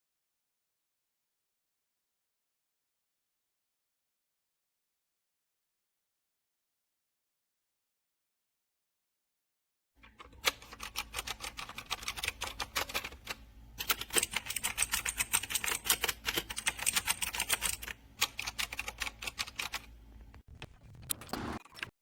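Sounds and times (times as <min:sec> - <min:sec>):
clicky mechanical keyboard typing: 0:10.1 - 0:21.9.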